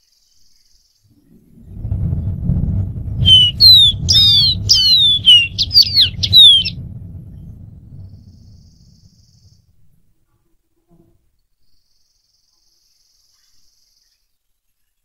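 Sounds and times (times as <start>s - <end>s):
low rumble: 1.1s - 10.1s
bird singing whistled notes: 3.2s - 6.8s.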